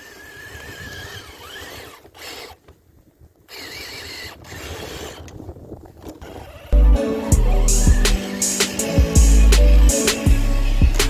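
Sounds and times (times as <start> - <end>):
toy truck electric motor whining: 0.0 - 2.8, 3.4 - 6.8
music: 6.8 - 11.0.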